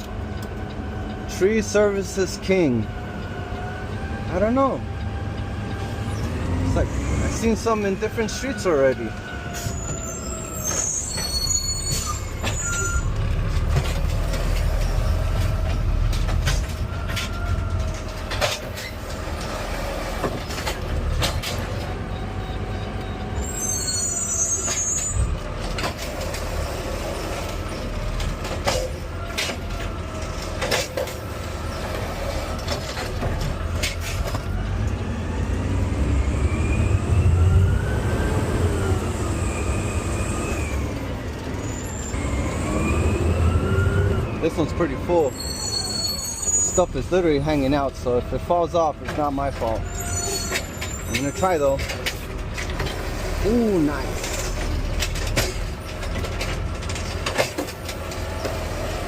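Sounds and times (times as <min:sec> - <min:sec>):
garbage truck engine rumble: 0:00.0 - 0:59.0
brief high squeals: 0:09.6 - 0:13.1, 0:23.4 - 0:25.3, 0:45.3 - 0:47.0, 0:49.9 - 0:51.8.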